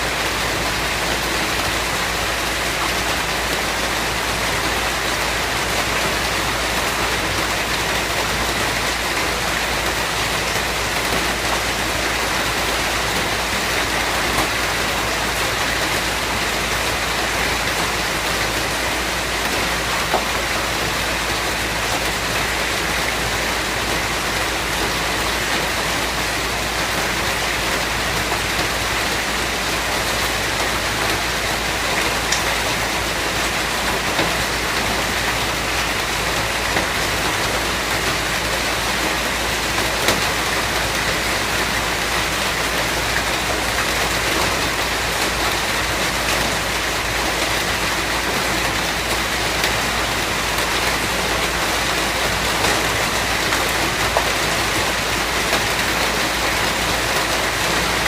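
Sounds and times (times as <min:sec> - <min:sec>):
steady rain pattering: 0:00.0 - 0:58.0
individual raindrop ticks: 0:32.0 - 0:32.5.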